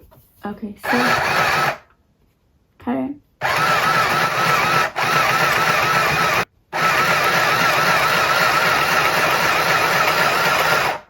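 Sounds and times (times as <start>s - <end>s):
sewing machine motor whir: 0.8s - 1.8s, 3.4s - 11.0s.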